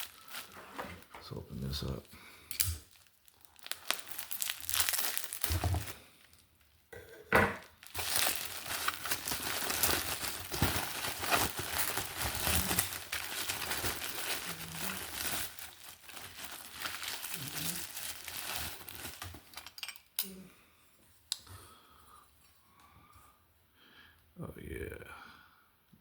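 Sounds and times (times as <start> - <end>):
packaging crinkling and tearing: 0.0 - 6.9, 7.6 - 19.8.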